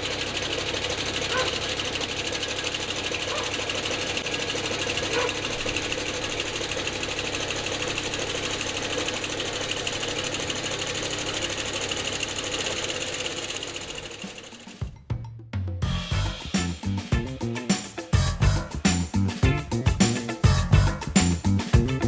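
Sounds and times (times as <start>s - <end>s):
skid steer engine: 0.0s - 14.8s.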